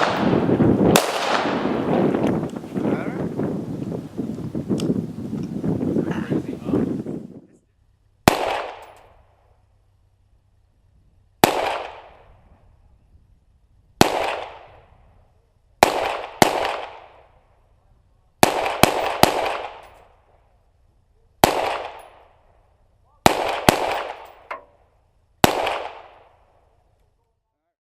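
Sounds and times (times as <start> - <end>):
gunshots echoing: 0.0 - 2.2, 8.3 - 9.0, 11.4 - 12.3, 14.0 - 14.9, 15.8 - 17.3, 18.4 - 19.9, 21.4 - 22.3, 23.2 - 24.8, 25.4 - 26.3.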